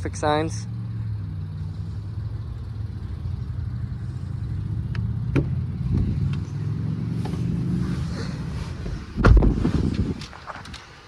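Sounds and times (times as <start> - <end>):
car engine idling: 0.0 - 9.2.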